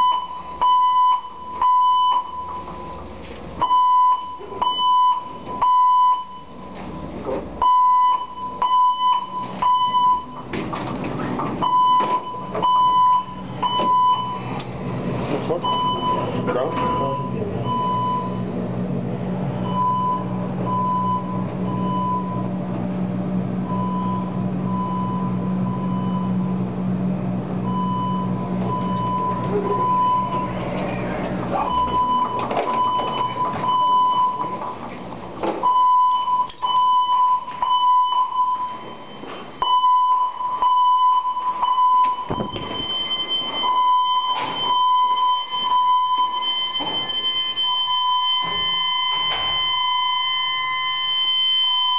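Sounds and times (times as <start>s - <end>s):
fire alarm bell ringing: 0.0s - 3.0s, 3.6s - 6.8s, 7.6s - 10.5s, 11.6s - 14.5s, 31.6s - 34.8s, 35.6s - 51.9s
low hum: 0.0s - 51.9s.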